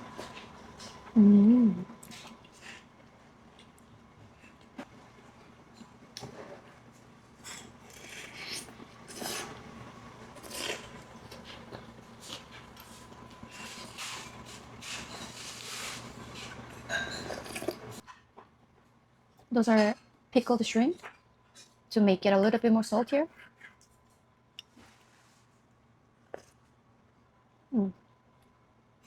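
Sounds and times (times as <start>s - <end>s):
faint steady hum: 0.0s - 29.0s
spoon and chopsticks scraping bowl: 13.6s - 17.8s.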